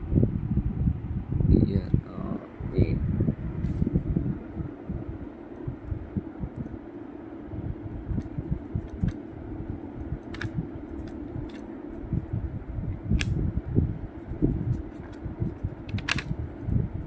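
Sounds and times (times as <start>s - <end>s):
fan humming: 0.0s - 17.0s
wind buffeting microphone: 0.0s - 17.0s
sharp clicks: 10.2s - 11.7s, 15.9s - 16.4s.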